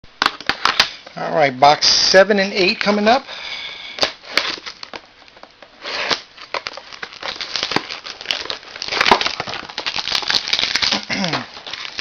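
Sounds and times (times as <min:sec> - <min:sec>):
crackles and clicks: 0:04.0 - 0:12.0
wrapper crinkling and tearing: 0:04.0 - 0:12.0.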